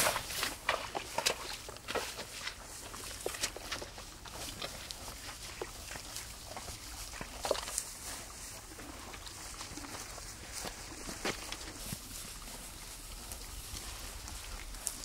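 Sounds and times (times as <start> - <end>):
animals rustling and moving: 0.0 - 15.0.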